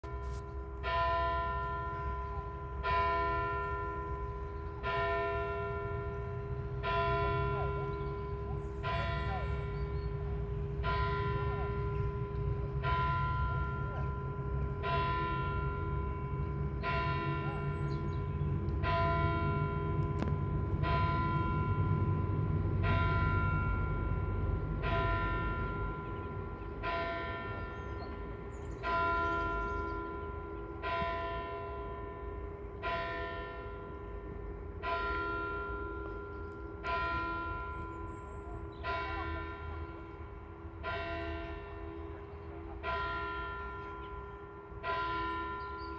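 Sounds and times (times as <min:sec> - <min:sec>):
church bell tolling: 0:00.1 - 0:45.9.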